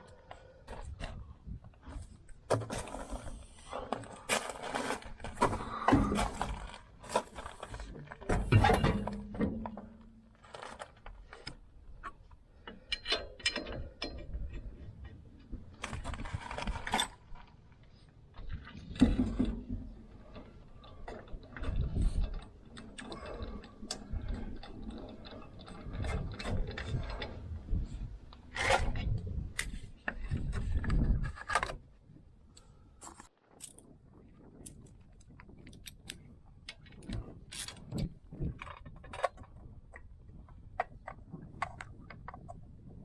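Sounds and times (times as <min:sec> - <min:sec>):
hand tools clicking and clanking: 0:33.0 - 0:33.8.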